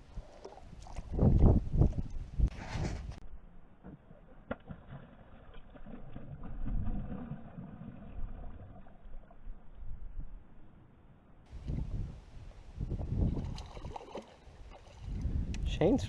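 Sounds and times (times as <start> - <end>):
wind rumbling on microphone: 0.0 - 3.4, 5.9 - 10.5, 11.5 - 16.0.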